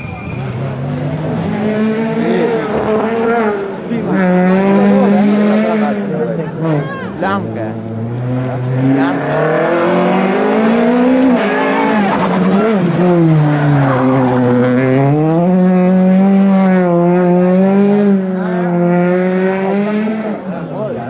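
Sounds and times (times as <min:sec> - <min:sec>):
rally car engine revving high: 0:00.4 - 0:21.0.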